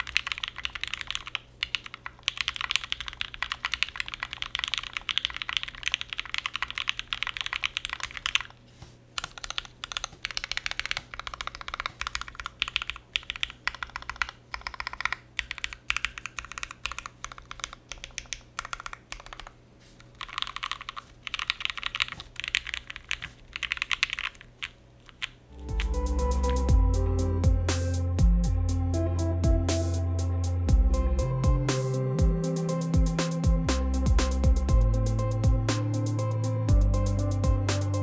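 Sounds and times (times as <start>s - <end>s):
fast mechanical keyboard typing: 0.0s - 8.6s, 9.2s - 25.9s.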